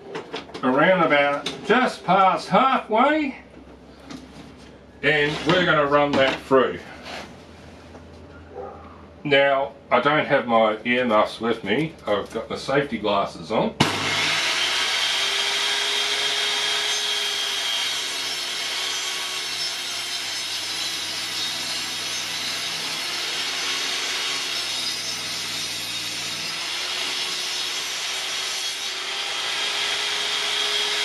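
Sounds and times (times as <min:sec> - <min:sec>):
table saw cutting board: 0:13.8 - 0:31.0.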